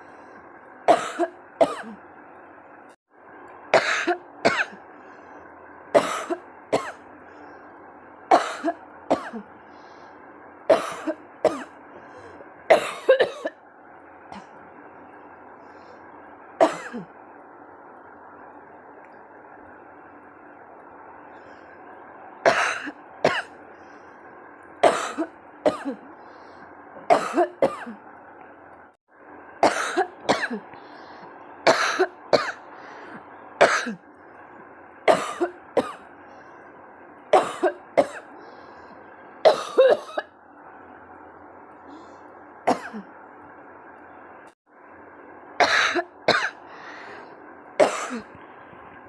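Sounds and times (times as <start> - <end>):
woman coughing: 0.9 - 2.0, 8.3 - 9.4, 12.7 - 13.5, 16.6 - 17.1, 22.5 - 23.5, 24.8 - 26.0, 27.1 - 28.0, 29.6 - 30.7, 31.7 - 32.6, 33.6 - 34.0, 35.1 - 36.0, 37.4 - 38.2, 39.5 - 40.3, 42.7 - 43.1, 45.6 - 46.6, 47.8 - 48.3.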